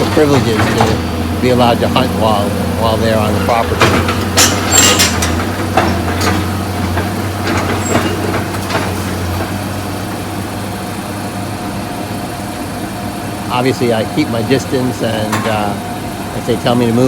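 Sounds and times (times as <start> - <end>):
sharp knocks: 0.0 - 9.8
excavator diesel engine running: 0.0 - 17.0.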